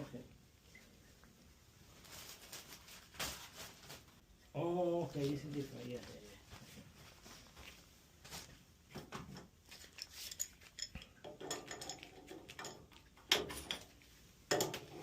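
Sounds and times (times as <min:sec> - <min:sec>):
metal tools clanking on pipes: 0:09.8 - 0:15.0.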